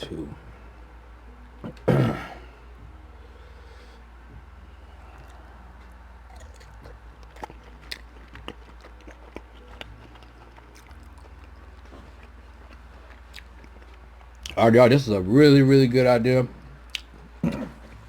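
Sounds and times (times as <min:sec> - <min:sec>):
steady low hum: 0:00.0 - 0:18.0
wet mouth chewing clicks: 0:06.3 - 0:14.6, 0:16.9 - 0:17.8.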